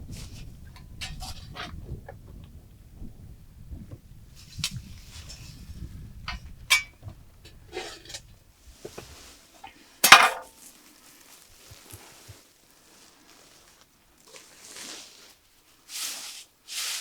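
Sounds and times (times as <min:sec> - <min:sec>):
dishes and utensils clinking: 0:10.0 - 0:10.5.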